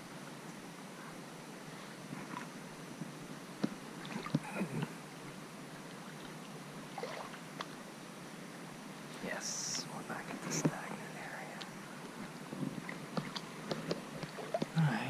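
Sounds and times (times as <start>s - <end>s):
wading through shallow water: 3.8s - 4.8s, 5.6s - 7.9s, 11.6s - 15.0s.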